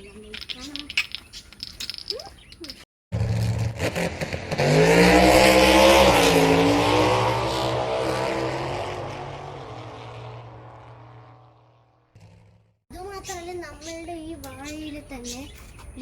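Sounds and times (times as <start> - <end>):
vehicle engine passing: 3.2 - 12.8.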